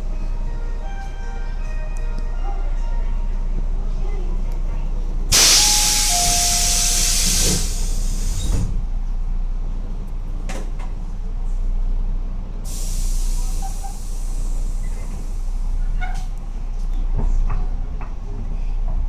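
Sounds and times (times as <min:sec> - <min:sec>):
train car rumble: 0:00.0 - 0:19.0
compressed air hissing: 0:05.3 - 0:08.7, 0:12.7 - 0:14.9.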